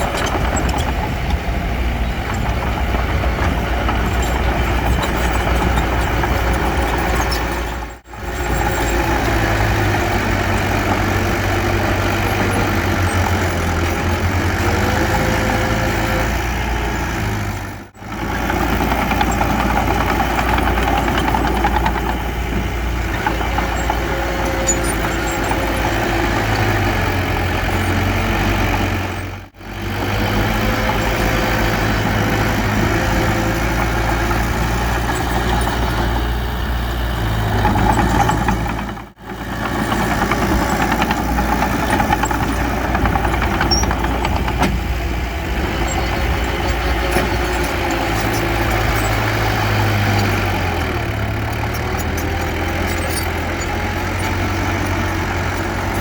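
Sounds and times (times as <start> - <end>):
heavy machinery diesel engines droning: 0.0 - 56.0.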